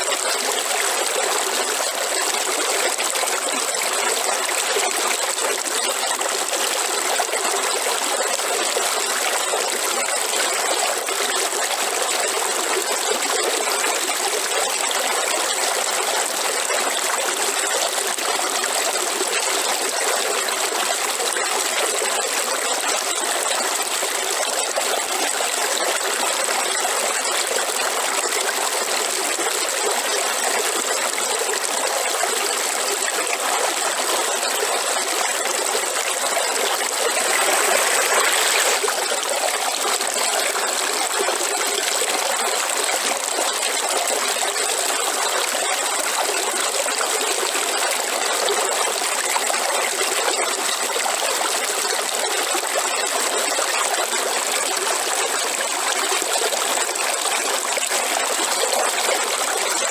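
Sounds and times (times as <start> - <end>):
river water rushing: 37.0 - 38.9.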